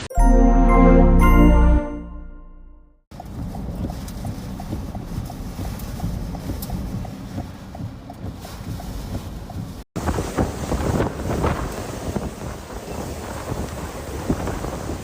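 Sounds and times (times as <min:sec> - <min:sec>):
wind buffeting microphone: 0:03.2 - 0:15.0.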